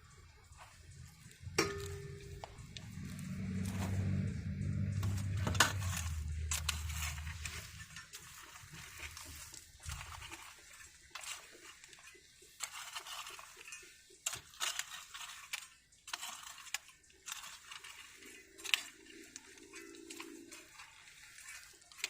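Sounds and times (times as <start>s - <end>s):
crunches and scrapes in soil: 0.0s - 22.0s
low rumble: 0.9s - 8.0s.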